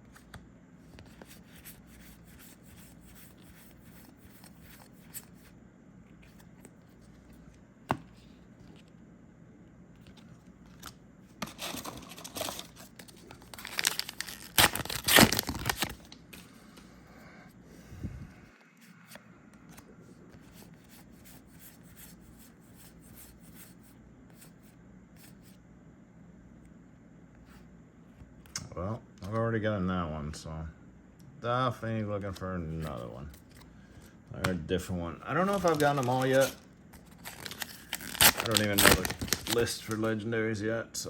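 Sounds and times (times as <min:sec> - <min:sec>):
wrapper crinkly ripping: 0:11.6 - 0:16.2, 0:35.4 - 0:40.1.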